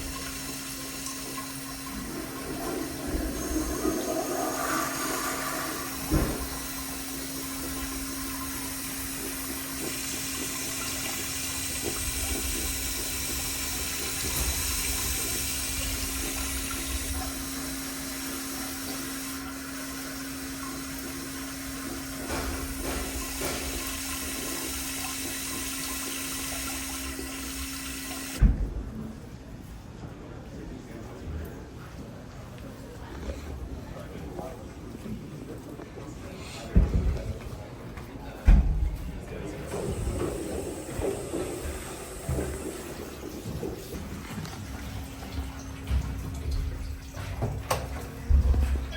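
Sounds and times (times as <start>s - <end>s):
toilet water rushing and refilling: 0.0s - 28.4s, 38.5s - 48.9s.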